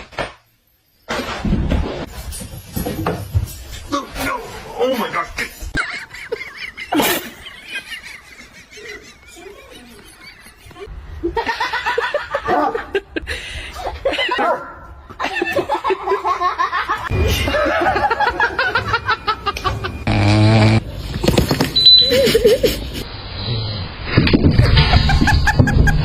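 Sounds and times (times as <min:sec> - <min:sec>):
people laughing: 0:05.2 - 0:14.4, 0:15.2 - 0:20.1, 0:22.1 - 0:23.0, 0:24.6 - 0:26.0.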